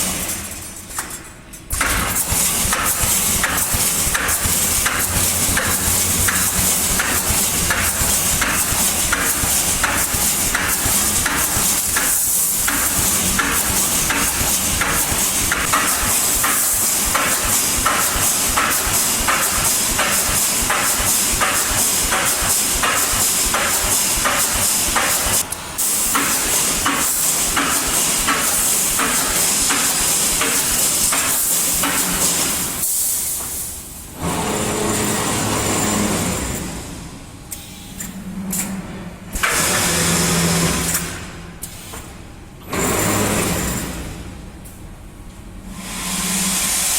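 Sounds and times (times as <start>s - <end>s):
welding machine strokes: 1.8s - 32.9s
machine hum: 2.1s - 18.6s.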